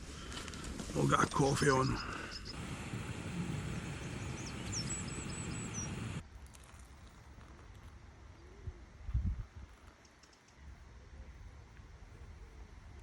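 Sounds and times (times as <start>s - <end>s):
small bird chirping: 1.6s - 2.6s, 4.0s - 6.6s
steady rushing noise: 2.5s - 6.2s.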